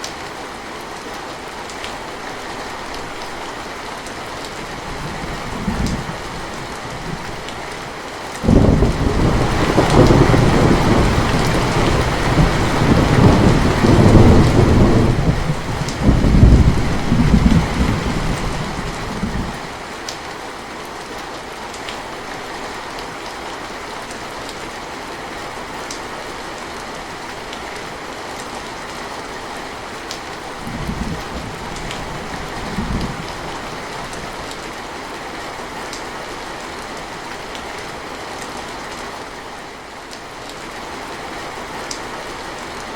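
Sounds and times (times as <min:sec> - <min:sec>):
steady rain: 0:00.0 - 0:42.9
thunder rumbling: 0:08.4 - 0:19.7, 0:30.5 - 0:34.5.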